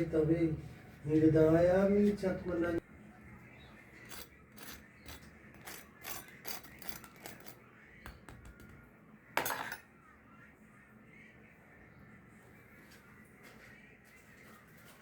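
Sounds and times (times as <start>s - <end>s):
kitchenware clicks and clinks: 4.1s - 7.6s, 9.4s - 9.9s
kitchenware scraping: 9.4s - 9.8s.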